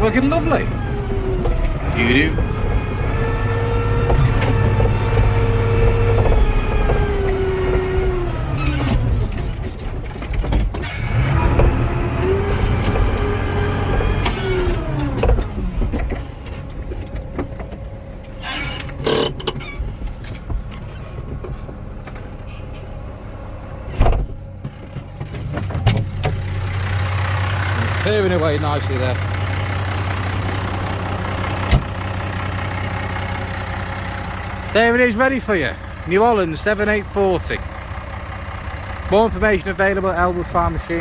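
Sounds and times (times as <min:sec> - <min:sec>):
tractor diesel engine running: 0:00.0 - 0:41.0
sharp knocks and clunks: 0:01.4 - 0:17.9, 0:23.9 - 0:26.6, 0:30.4 - 0:32.0.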